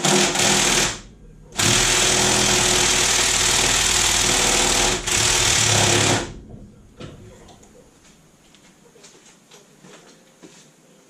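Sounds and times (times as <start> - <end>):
power tool rattling: 0.0 - 6.5.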